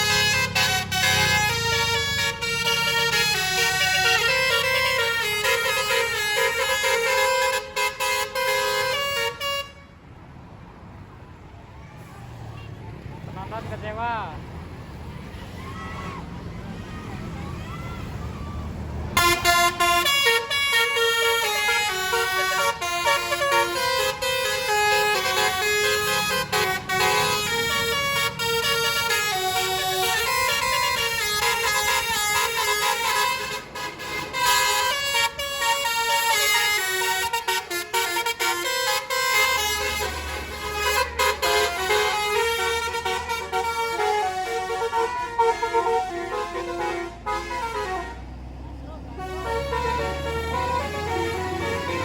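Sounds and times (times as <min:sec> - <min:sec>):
bus horn playing a tune: 0:00.0 - 0:10.0, 0:19.1 - 0:52.0
low engine rumble: 0:12.0 - 0:52.0.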